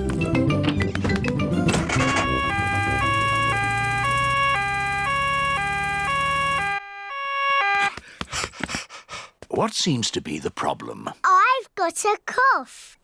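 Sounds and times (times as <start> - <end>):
cartoon two-tone siren: 1.8 - 8.0.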